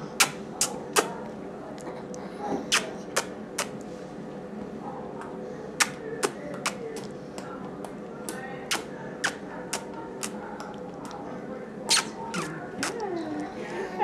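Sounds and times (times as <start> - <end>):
faint voice: 4.8 - 14.0.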